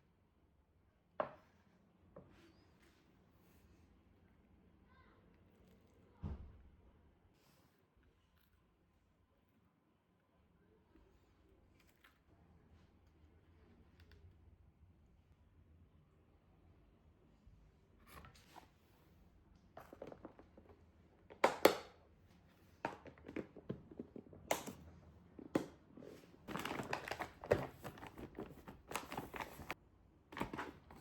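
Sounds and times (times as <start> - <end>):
crinkling and rustling: 18.0 - 31.0.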